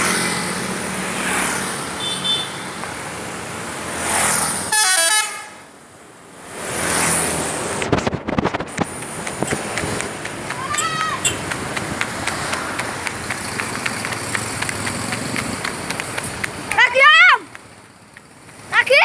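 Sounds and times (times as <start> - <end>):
passing traffic: 0.0 - 19.0
bus musical horn: 4.7 - 5.6.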